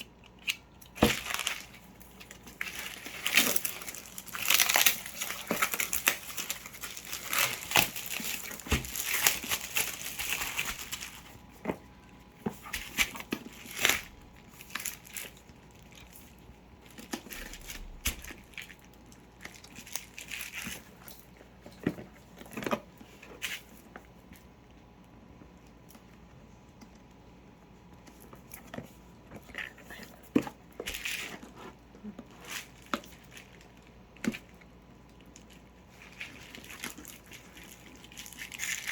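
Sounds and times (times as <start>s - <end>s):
packaging tearing and crinkling: 0.2s - 11.9s, 12.5s - 21.3s, 29.7s - 38.9s.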